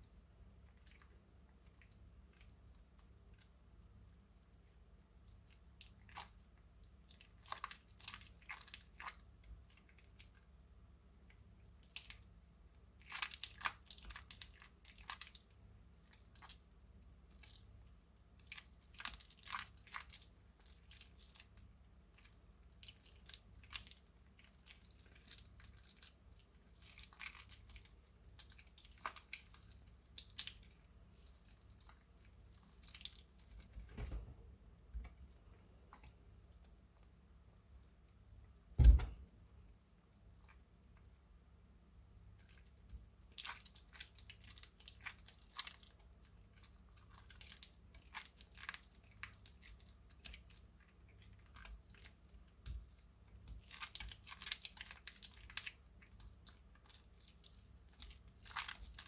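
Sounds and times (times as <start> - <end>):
soap crackling crunches: 17.3 - 33.8, 42.3 - 59.0.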